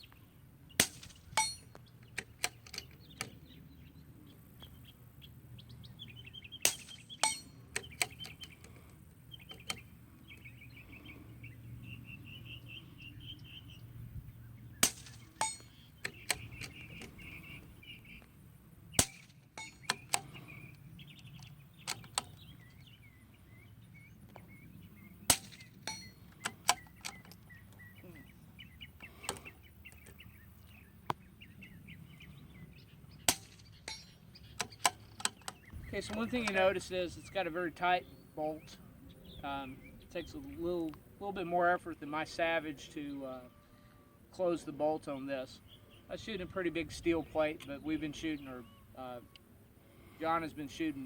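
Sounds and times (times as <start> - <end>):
birds singing: 0.0 - 51.0
suppressed rifle shots: 0.8 - 1.6, 19.0 - 20.1, 25.3 - 26.0.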